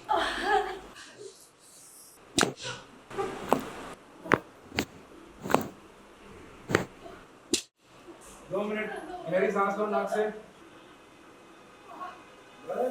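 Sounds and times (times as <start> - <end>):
sharp slaps or knocks: 2.4 - 2.6, 4.3 - 5.8, 6.7 - 6.9
short swish: 6.7 - 7.0.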